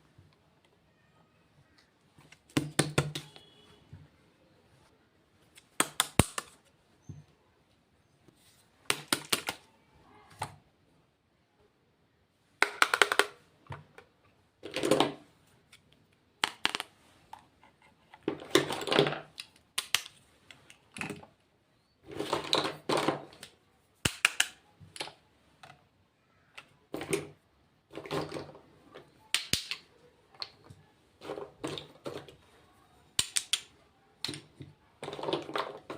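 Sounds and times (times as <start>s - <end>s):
packaging clicks taps and rattles: 8.9s - 9.6s, 12.6s - 13.4s, 15.8s - 16.9s, 22.2s - 25.2s.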